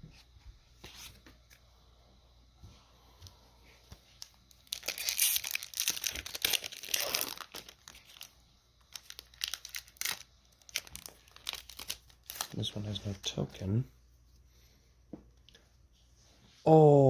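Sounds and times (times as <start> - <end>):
foil wrapper tearing and crinkling: 4.2 - 12.7.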